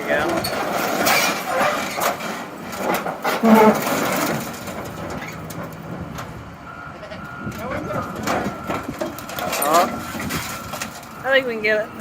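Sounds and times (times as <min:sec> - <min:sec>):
sheet metal crunching and creaking: 0:00.0 - 0:06.6, 0:07.4 - 0:12.0
short metal squeal: 0:03.2 - 0:04.3.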